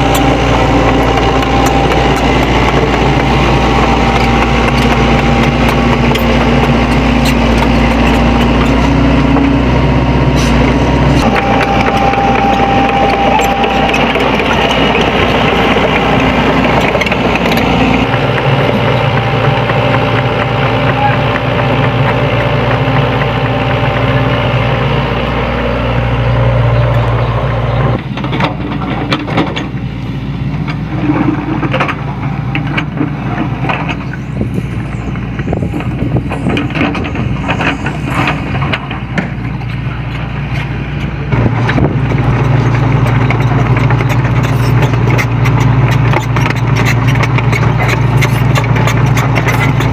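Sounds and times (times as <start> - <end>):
excavator diesel engine droning: 0.0 - 49.9.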